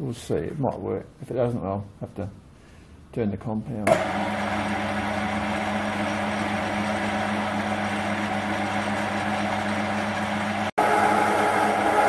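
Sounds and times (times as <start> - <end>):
metal lathe humming: 3.9 - 12.0.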